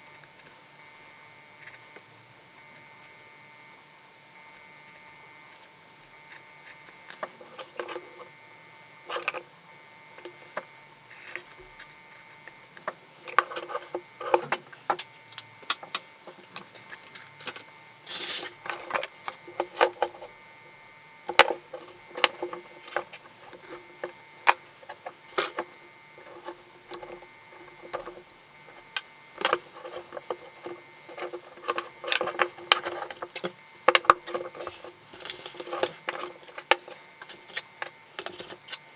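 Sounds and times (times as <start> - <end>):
battery parts clicking and scraping: 6.3 - 8.4, 9.0 - 9.5, 10.2 - 20.4, 21.2 - 38.9.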